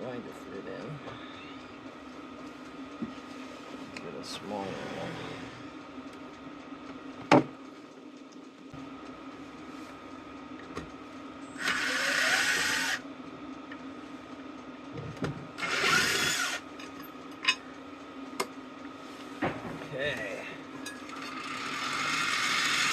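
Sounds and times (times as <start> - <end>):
power drill running: 11.6 - 13.0, 15.6 - 16.6, 21.2 - 22.9.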